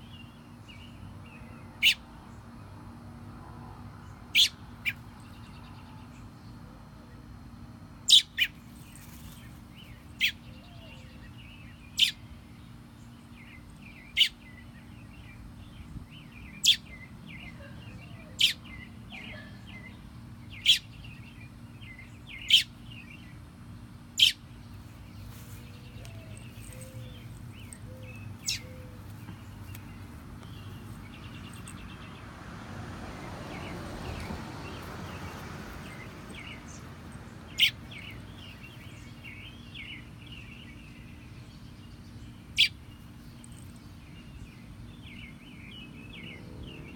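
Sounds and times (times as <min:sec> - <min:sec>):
soft bird chirping: 0:24.2 - 0:32.2, 0:33.5 - 0:46.4.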